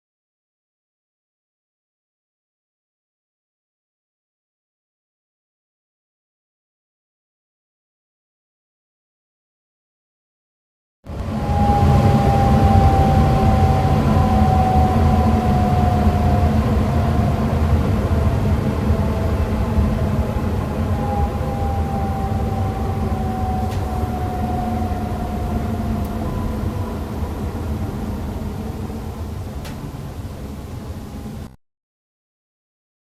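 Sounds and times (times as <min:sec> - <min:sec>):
whining moan sliding down: 0:11.1 - 0:31.5
blower motor humming: 0:11.1 - 0:31.6.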